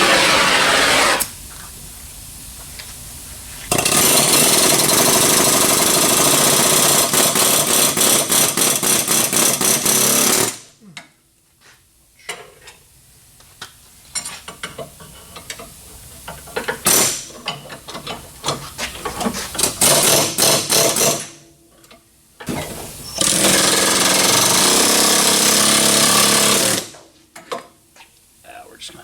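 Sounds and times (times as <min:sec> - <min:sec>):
impact wrench hammering: 0:19.6 - 0:21.4.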